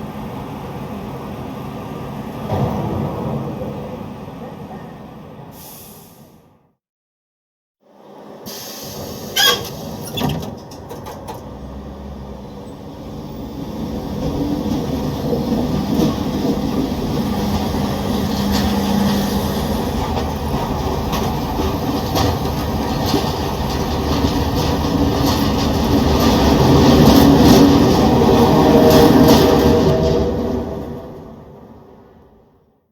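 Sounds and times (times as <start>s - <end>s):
train rumbling on rails: 0.0s - 6.6s, 7.9s - 32.6s.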